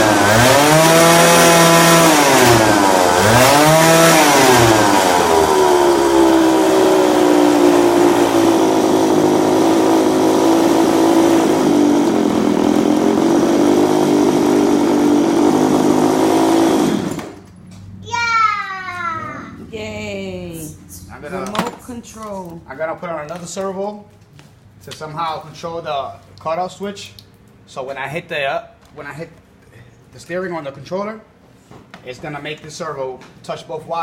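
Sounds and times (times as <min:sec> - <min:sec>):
go-kart engine revving: 0:00.0 - 0:17.4.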